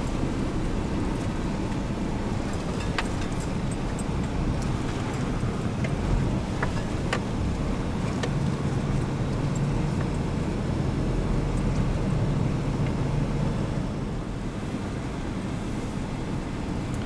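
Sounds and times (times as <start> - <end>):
vehicle engine droning: 0.0 - 17.0.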